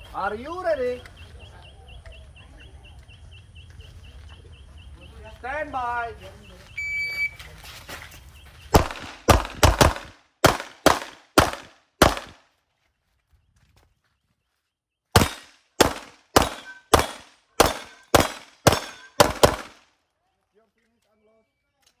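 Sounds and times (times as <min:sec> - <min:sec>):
pistol shots: 0:08.8 - 0:12.4, 0:15.2 - 0:19.8.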